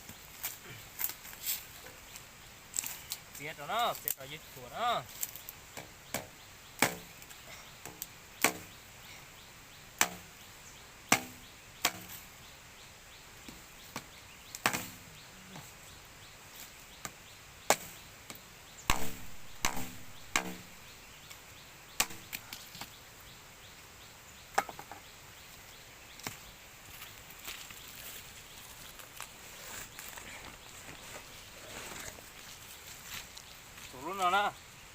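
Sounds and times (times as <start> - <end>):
chopping strikes with ringing: 10.0 - 10.3, 11.1 - 12.1, 18.9 - 20.7.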